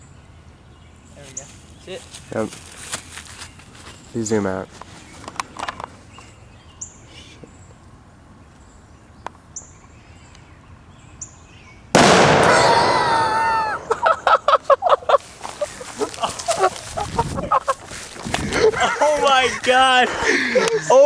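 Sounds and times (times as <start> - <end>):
bottle bursting with loud bang: 12.0 - 14.2.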